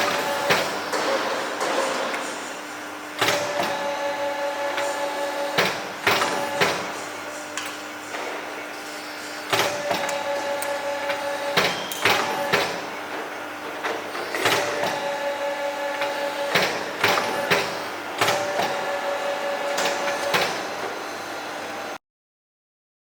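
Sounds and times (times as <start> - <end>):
machine clunks: 0.0 - 2.6
tube bending machine hum: 0.0 - 22.0.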